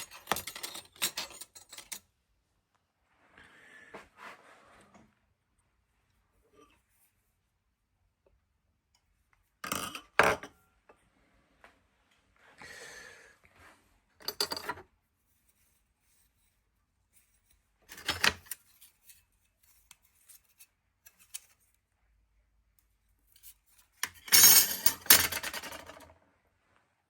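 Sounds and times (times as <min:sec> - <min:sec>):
tools and parts clinking: 0:00.0 - 0:02.1, 0:14.2 - 0:14.8, 0:17.9 - 0:19.2, 0:23.4 - 0:26.1.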